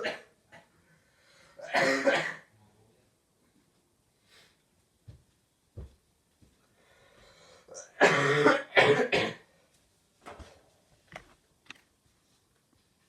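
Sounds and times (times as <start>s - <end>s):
faint in-breath: 0.8s - 1.6s, 6.7s - 7.7s
person coughing: 1.6s - 2.5s, 7.7s - 9.4s.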